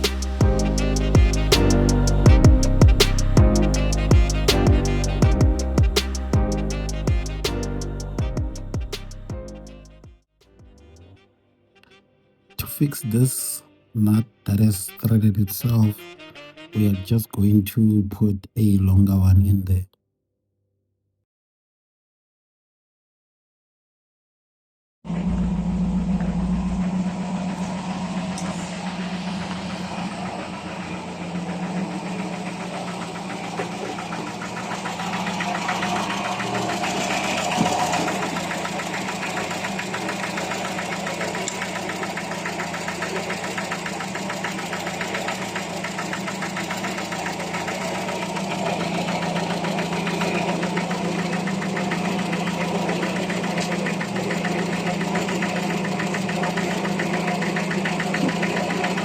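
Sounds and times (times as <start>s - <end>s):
car engine idling: 25.1s - 59.0s.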